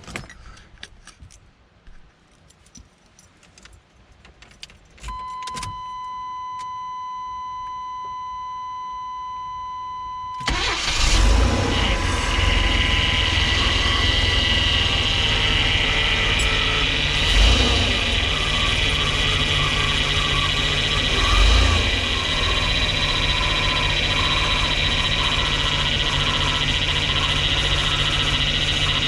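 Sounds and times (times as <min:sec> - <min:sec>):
van engine cranking and running: 0:10.4 - 0:29.0
high rubbing squeal: 0:11.7 - 0:29.0
electronic warning tone: 0:15.2 - 0:29.0.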